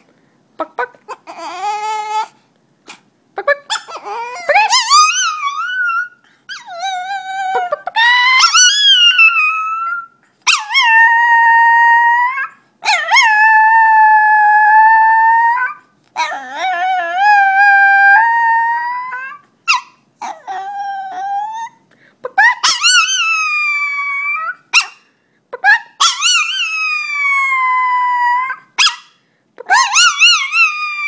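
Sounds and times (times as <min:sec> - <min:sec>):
dog yipping: 0:03.6 - 0:11.0, 0:18.9 - 0:21.8, 0:22.4 - 0:31.0
dog howling: 0:03.7 - 0:21.8, 0:22.4 - 0:24.6, 0:26.0 - 0:28.9, 0:29.7 - 0:31.0.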